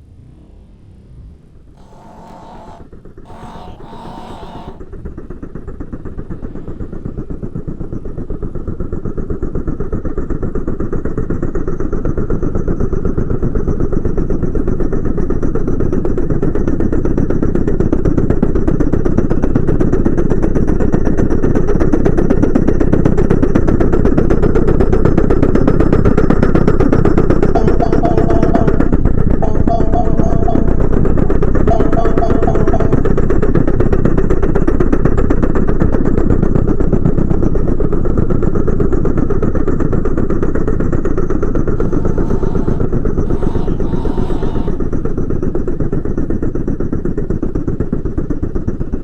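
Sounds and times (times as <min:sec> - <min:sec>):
train rumbling: 0:41.8 - 0:45.3.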